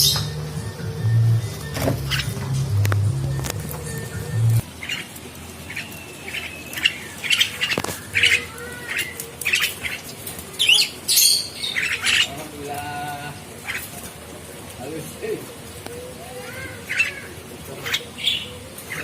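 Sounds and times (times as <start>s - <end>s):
bird squawking: 1.8s - 2.5s, 3.9s - 12.4s, 13.6s - 14.0s, 16.2s - 19.0s.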